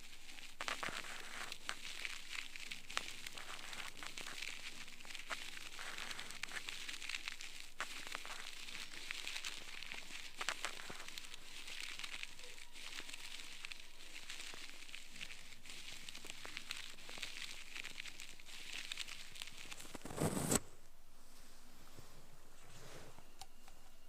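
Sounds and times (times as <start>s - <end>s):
ear pick scraping in ear: 19.7s - 20.8s.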